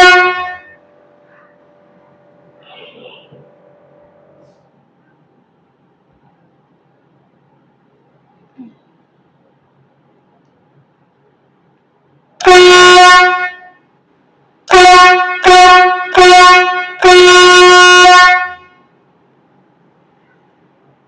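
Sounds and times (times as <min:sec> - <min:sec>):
air horn blasts: 0:00.0 - 0:00.8, 0:12.4 - 0:13.8, 0:14.7 - 0:18.8.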